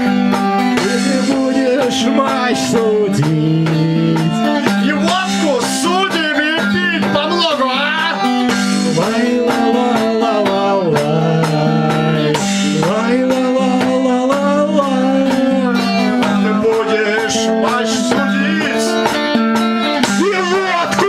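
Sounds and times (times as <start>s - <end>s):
acoustic guitar strumming: 0.0s - 21.0s
person singing: 0.0s - 21.0s.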